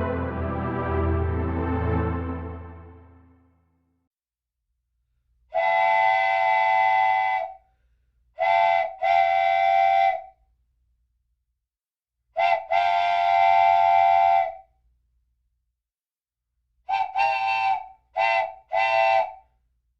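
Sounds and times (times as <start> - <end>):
train whistle blasts: 5.5 - 7.6, 8.4 - 10.3, 12.4 - 14.6, 16.9 - 19.4.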